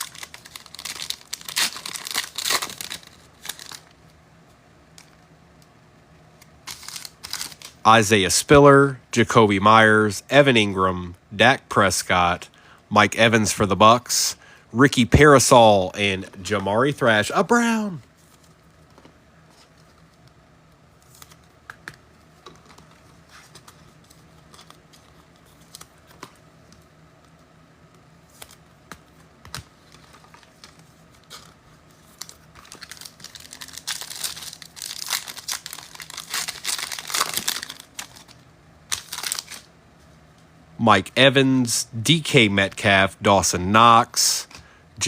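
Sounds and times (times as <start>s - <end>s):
card pack wrapper crinkling and tearing: 0.0s - 4.0s, 6.6s - 8.0s, 29.5s - 39.7s.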